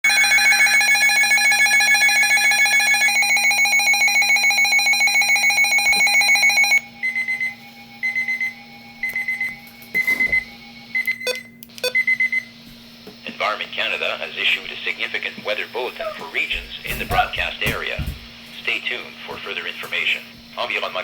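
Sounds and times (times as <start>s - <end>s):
rapidly pulsing electronic alarm: 0.0s - 12.6s
steady low hum: 6.8s - 21.0s.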